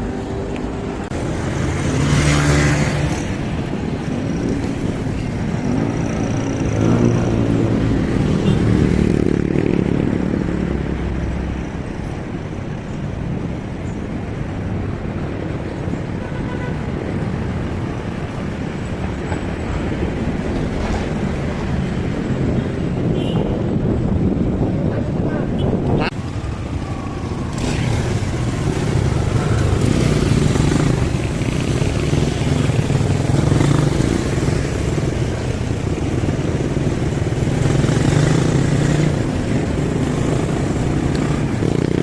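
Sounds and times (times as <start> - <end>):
traffic rush: 0.0 - 42.0
vehicle engines running: 17.0 - 42.0.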